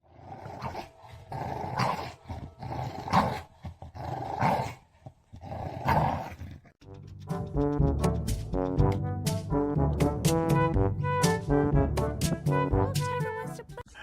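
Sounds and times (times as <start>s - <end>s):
dog growling: 0.0s - 6.8s.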